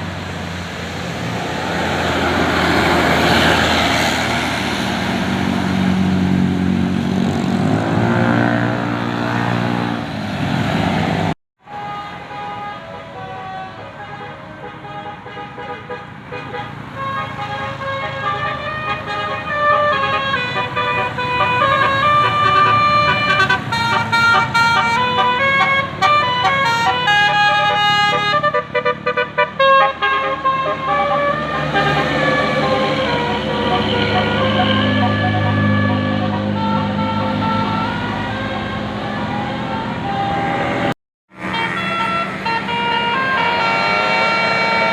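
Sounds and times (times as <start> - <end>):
road traffic and engine noise: 0.0 - 44.9
bus multi-note horn tune: 11.6 - 44.9.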